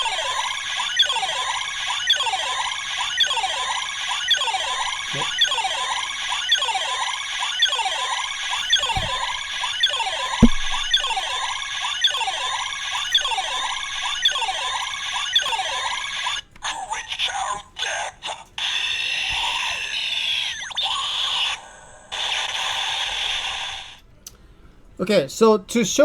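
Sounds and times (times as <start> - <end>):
handling knocks: 0.0 - 0.8, 4.6 - 5.4, 8.3 - 11.8, 13.0 - 14.5
electronic alarm-like tone: 4.3 - 11.8.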